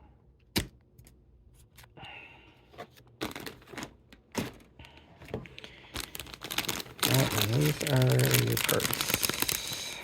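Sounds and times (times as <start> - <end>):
plastic packaging rustling: 2.9 - 10.0.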